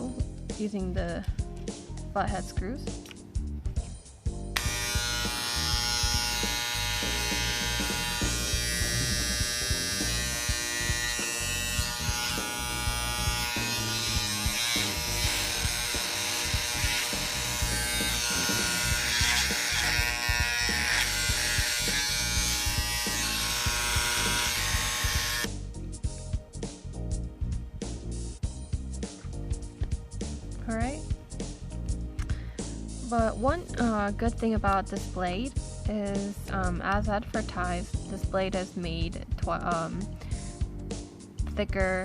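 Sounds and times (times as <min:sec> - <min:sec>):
hair trimmer buzzing: 0:04.5 - 0:25.6.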